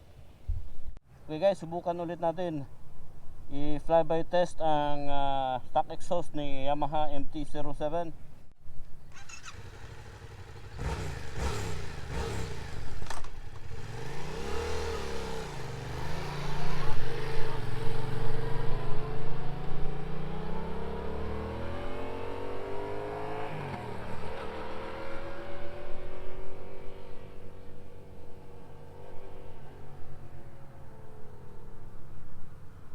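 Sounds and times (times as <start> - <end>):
motorcycle engine revving past: 9.1 - 31.8.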